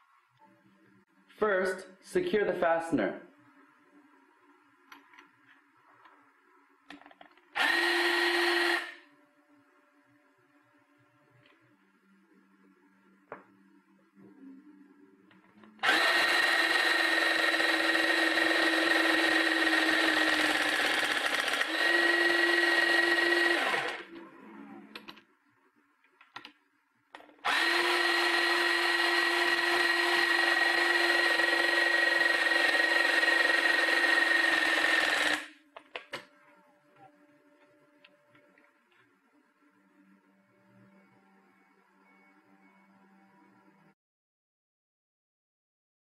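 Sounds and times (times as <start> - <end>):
crimping tool motor running: 15.8 - 24.1, 27.4 - 35.5.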